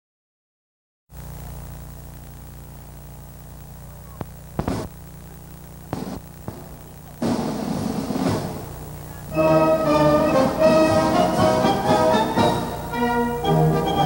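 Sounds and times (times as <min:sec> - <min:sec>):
electrical hum: 0:01.1 - 0:14.0
short sharp pops: 0:04.2 - 0:05.0, 0:05.9 - 0:07.4
burst of sound: 0:04.6 - 0:05.0, 0:05.9 - 0:08.9.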